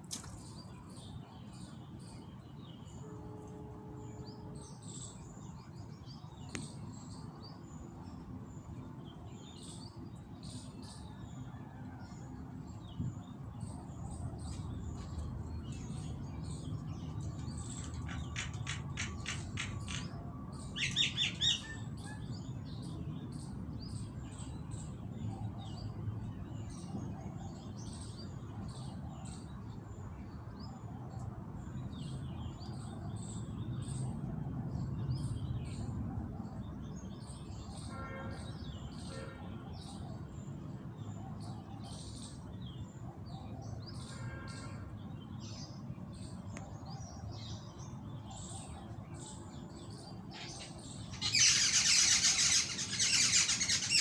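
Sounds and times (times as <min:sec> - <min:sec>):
small birds chirping: 0:13.2 - 0:26.9, 0:44.9 - 0:54.0
pitched bird calls: 0:17.6 - 0:22.3, 0:50.4 - 0:54.0.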